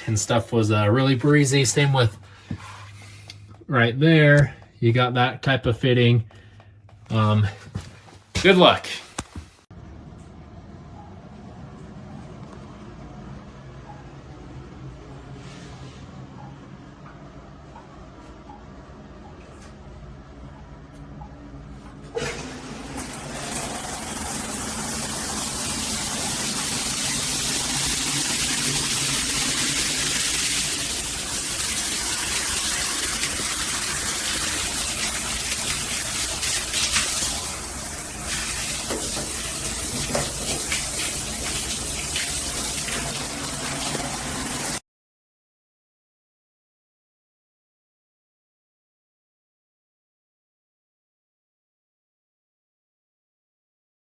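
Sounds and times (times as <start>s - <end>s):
water spraying from shower head: 22.2s - 44.8s.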